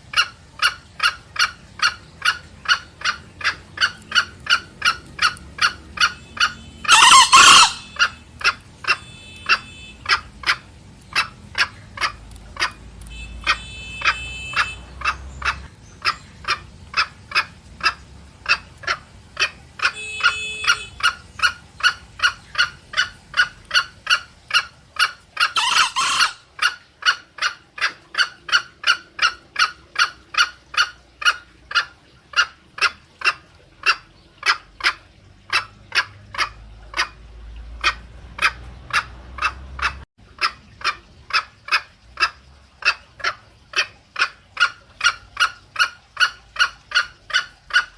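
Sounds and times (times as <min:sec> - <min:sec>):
junglefowl clucking: 0:00.0 - 0:47.9
bird pitched call: 0:00.1 - 0:10.6, 0:11.2 - 0:27.2
bird harsh call: 0:00.2 - 0:10.6, 0:11.2 - 0:26.8.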